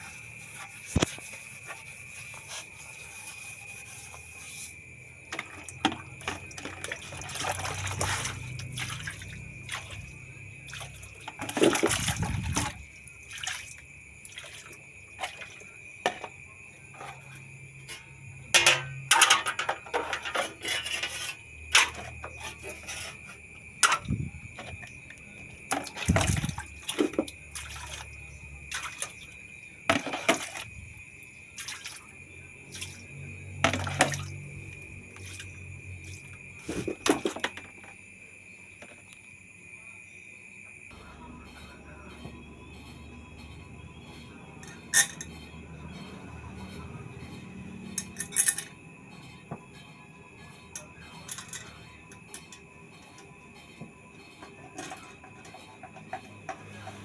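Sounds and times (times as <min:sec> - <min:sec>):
water splashing and dripping: 0:05.3 - 0:16.2, 0:23.8 - 0:30.8, 0:31.5 - 0:37.5
metal parts knocking and clattering: 0:18.5 - 0:22.2, 0:47.9 - 0:48.8.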